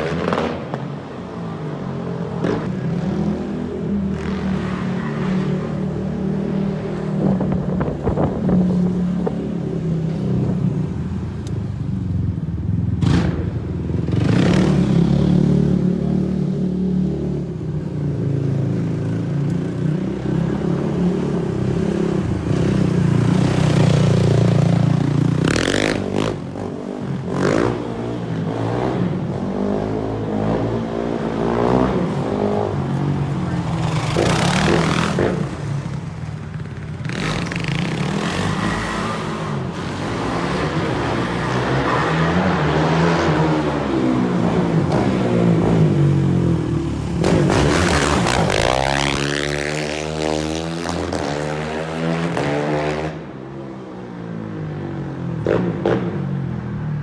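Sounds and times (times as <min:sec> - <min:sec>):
quad engine revving: 0:33.4 - 0:35.9.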